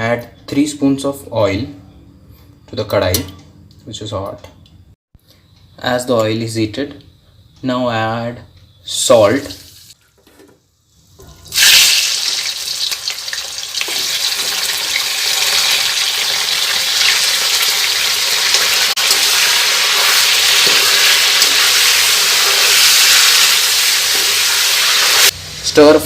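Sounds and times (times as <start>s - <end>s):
chicken sizzling in hot oil: 11.5s - 25.6s.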